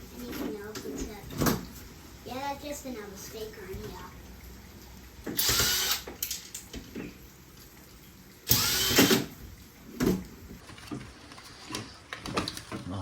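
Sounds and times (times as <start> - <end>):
power drill motor whine: 5.4 - 6.0, 8.5 - 9.3.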